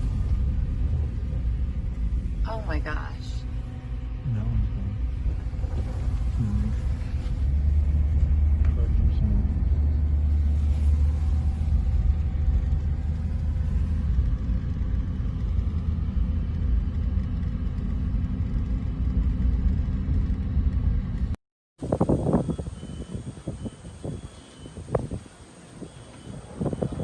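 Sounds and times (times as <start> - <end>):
strong wind blowing: 21.8 - 27.0
wind buffeting on microphone: 21.8 - 27.0.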